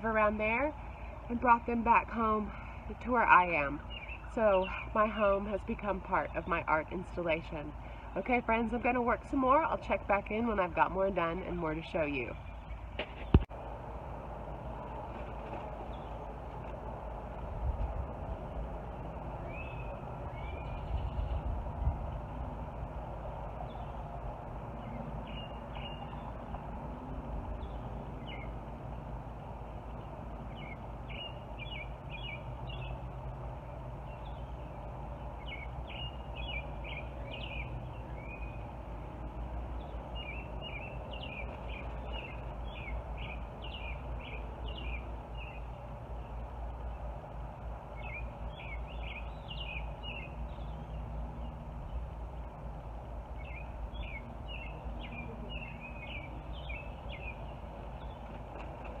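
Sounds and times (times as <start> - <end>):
low outdoor rumble: 0.0 - 59.0
birds chirping: 2.2 - 9.3, 15.4 - 16.4, 18.9 - 22.5, 23.4 - 59.0.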